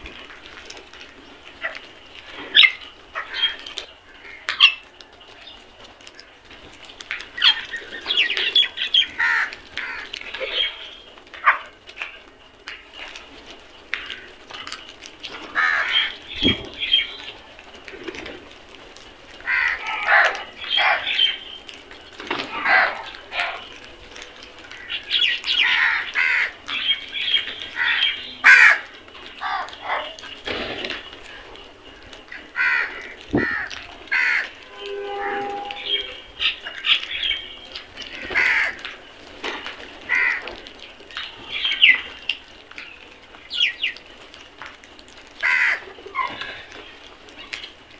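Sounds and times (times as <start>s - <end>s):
crows cawing: 9.1s - 10.2s, 15.5s - 16.2s, 19.4s - 21.4s, 22.4s - 23.8s, 24.7s - 26.8s, 27.7s - 30.2s, 32.3s - 37.0s, 38.2s - 39.0s, 40.1s - 40.6s, 45.4s - 46.7s.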